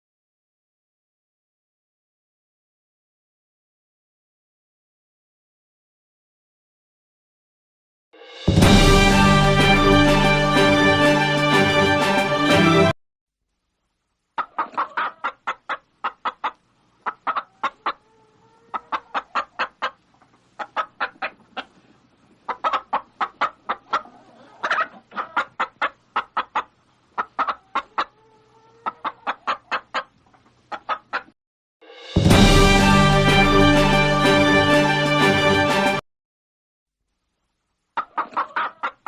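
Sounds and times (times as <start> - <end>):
background music: 8.2 - 13.0, 31.8 - 36.0
hen clucking: 14.3 - 31.4, 37.9 - 39.0.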